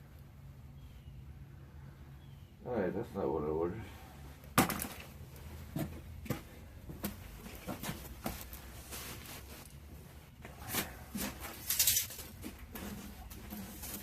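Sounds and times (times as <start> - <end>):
blanket and packaging rustling: 7.3 - 14.0.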